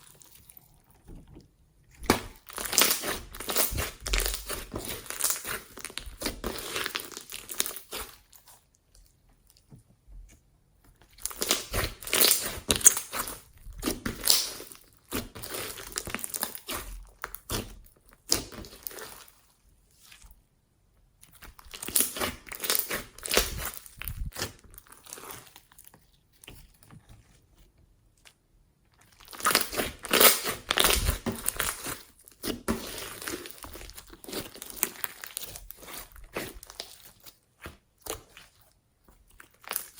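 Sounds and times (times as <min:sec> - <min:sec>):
slime squished by hand crackling: 0:02.0 - 0:08.4, 0:21.4 - 0:25.6, 0:29.2 - 0:38.6.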